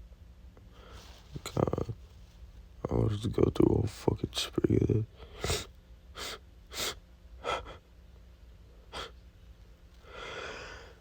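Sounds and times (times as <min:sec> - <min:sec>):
man breathing quickly: 0:05.2 - 0:07.9, 0:08.8 - 0:09.2, 0:10.0 - 0:11.0.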